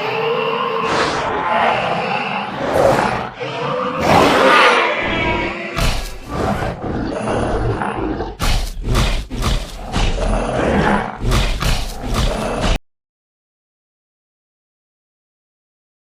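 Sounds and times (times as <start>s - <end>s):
dinosaur roars and growls: 0.0s - 12.8s.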